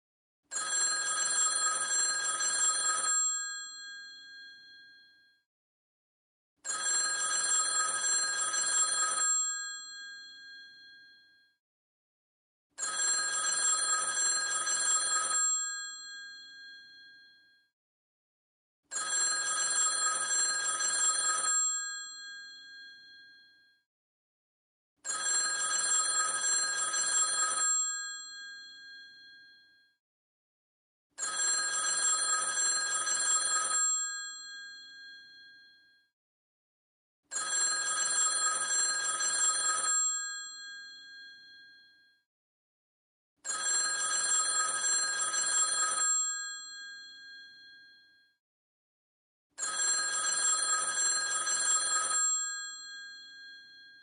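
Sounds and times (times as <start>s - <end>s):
telephone bell ringing: 0.5s - 5.4s, 6.6s - 11.5s, 12.8s - 17.6s, 18.9s - 23.7s, 25.0s - 29.9s, 31.2s - 36.0s, 37.3s - 42.0s, 43.4s - 48.2s, 49.6s - 54.0s.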